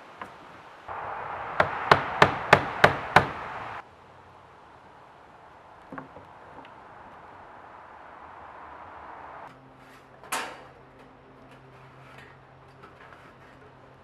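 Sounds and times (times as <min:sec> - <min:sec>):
hammer striking wood: 0:01.6 - 0:03.7.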